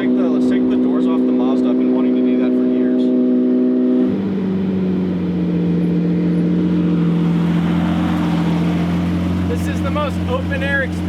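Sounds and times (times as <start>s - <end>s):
car engine droning: 0.0s - 11.0s
wind and road noise: 3.1s - 11.0s.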